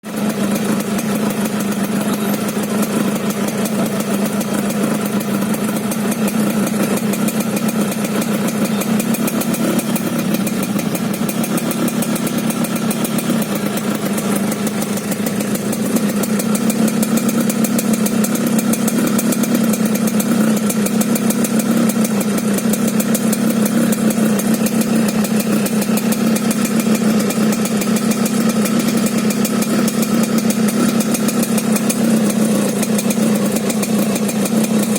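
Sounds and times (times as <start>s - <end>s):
motorcycle engine idling roughly: 0.0s - 34.9s.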